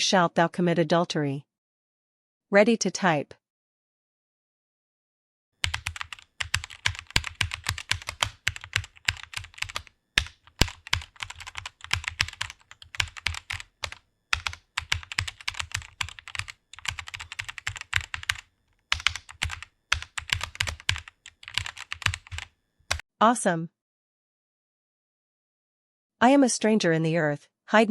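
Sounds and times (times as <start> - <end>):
fast typing on keyboard: 5.6 - 23.0.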